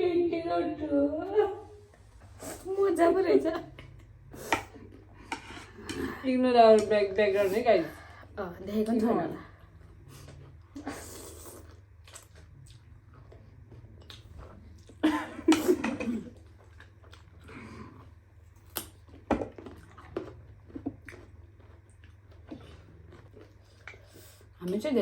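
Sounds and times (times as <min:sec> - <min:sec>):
chewing noodles: 0:09.5 - 0:15.0, 0:16.3 - 0:24.6.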